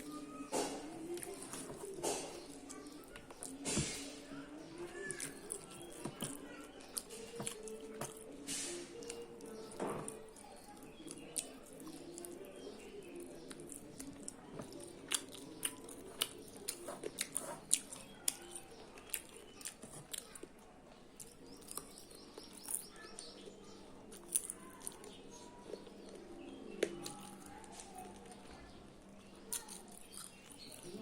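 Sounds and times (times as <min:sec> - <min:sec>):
chewing and mouth clicks: 0:05.0 - 0:08.4, 0:09.0 - 0:23.4, 0:24.0 - 0:28.5, 0:29.4 - 0:31.0.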